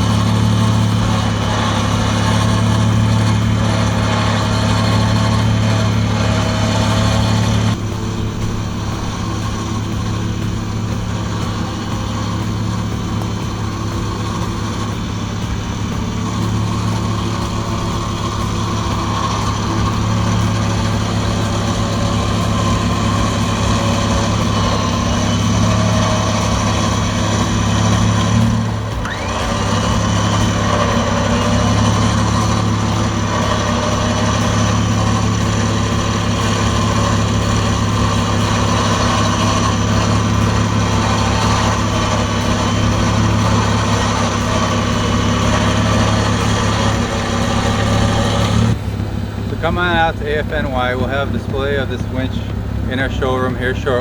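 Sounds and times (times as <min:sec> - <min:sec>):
electric winch drone: 0:00.0 - 0:54.0
engine running: 0:00.0 - 0:54.0.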